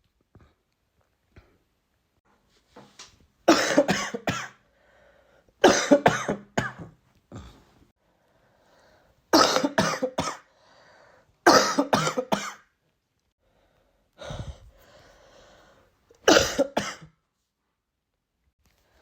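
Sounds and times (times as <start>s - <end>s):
person coughing: 3.5s - 4.6s, 5.6s - 7.6s, 9.4s - 10.5s, 11.5s - 12.7s, 16.2s - 17.1s
person drawing breath: 4.7s - 5.5s, 7.4s - 9.2s, 10.5s - 11.4s, 13.4s - 16.0s.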